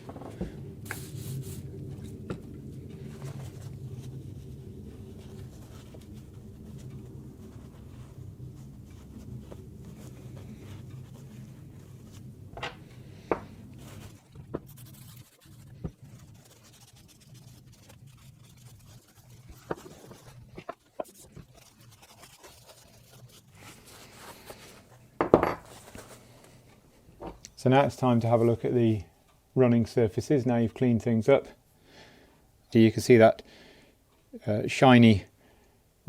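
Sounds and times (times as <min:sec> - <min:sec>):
faint low hum: 0:00.0 - 0:31.6
rubbing and scraping metal parts: 0:05.0 - 0:25.0.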